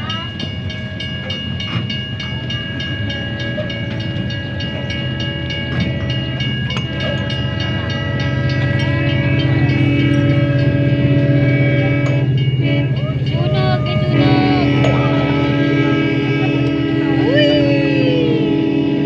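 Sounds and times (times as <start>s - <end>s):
tour train engine drone: 0.0s - 19.0s
high whine: 5.0s - 19.0s.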